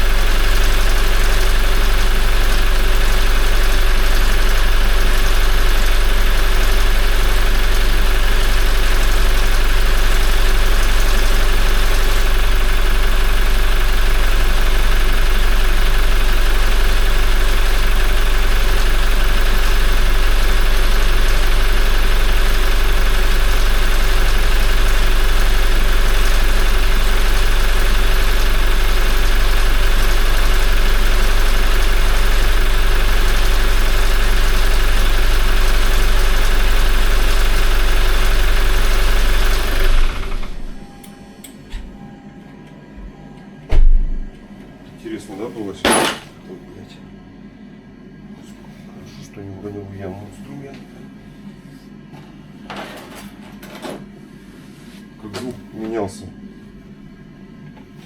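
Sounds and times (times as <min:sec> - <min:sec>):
diesel engine idling: 0:00.0 - 0:41.0.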